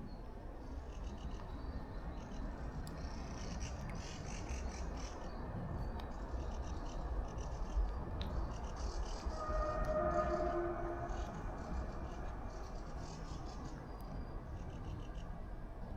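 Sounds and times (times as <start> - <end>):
steady low rumble: 1.8 - 15.9
distant pitched tone: 9.3 - 13.2.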